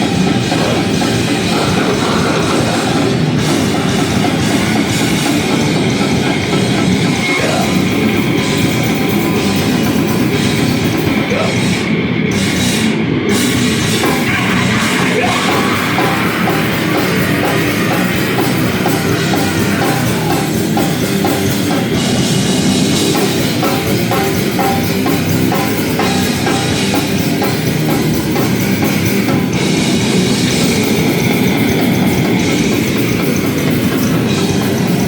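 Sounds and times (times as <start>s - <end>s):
heavy band playing live: 0.0s - 35.0s.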